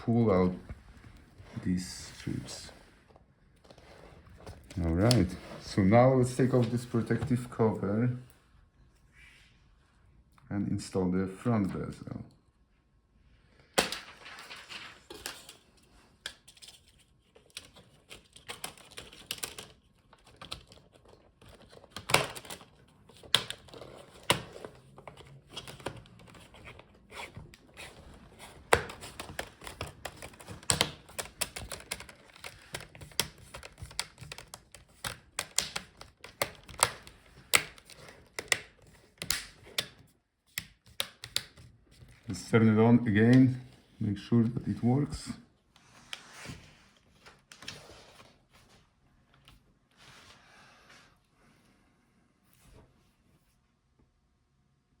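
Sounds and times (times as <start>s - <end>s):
plastic clips snapping: 28.8s - 40.0s.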